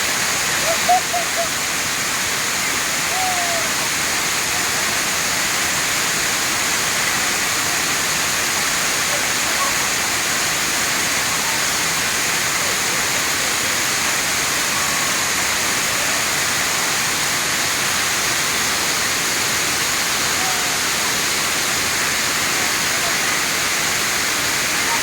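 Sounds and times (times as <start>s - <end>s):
waterfall rushing over rock: 0.0s - 25.0s.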